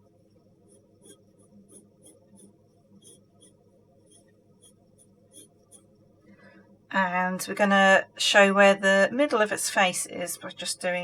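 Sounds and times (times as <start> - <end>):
pencil scratching on paper: 0.6 - 5.9.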